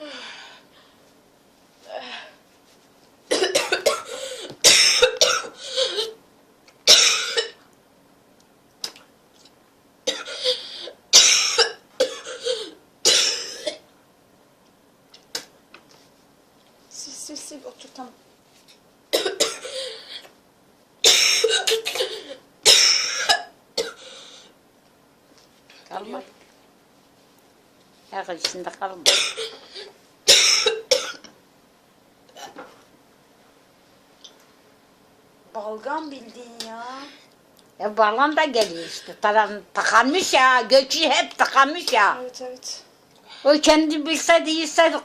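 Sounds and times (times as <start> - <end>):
man coughing: 3.3 - 6.1, 11.2 - 13.8, 19.1 - 19.9, 21.0 - 24.0, 29.1 - 29.7, 30.3 - 31.3.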